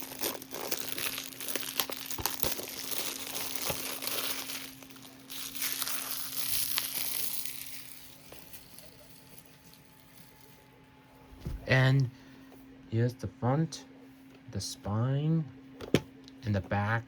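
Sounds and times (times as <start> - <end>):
packaging crumpling: 0.0 - 10.6.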